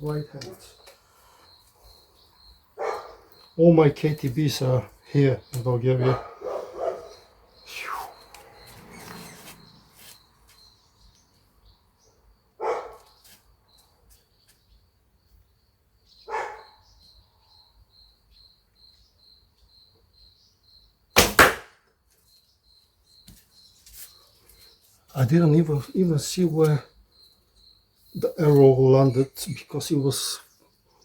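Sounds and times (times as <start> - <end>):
insects chirping: 0.0 - 31.0
distant dog barking: 2.8 - 3.4, 6.0 - 7.4, 12.6 - 13.0, 16.3 - 16.9
bowstring snapping: 21.2 - 21.7.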